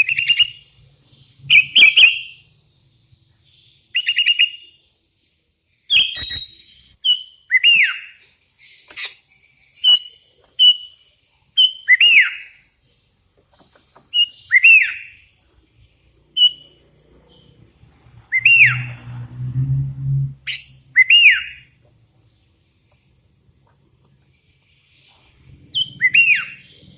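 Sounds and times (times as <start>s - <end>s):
bird whistled calls: 1.4s - 2.4s, 5.9s - 8.2s, 11.6s - 12.6s, 14.1s - 15.2s, 18.3s - 19.5s, 20.1s - 21.7s, 25.7s - 26.9s
low hum: 16.8s - 21.0s.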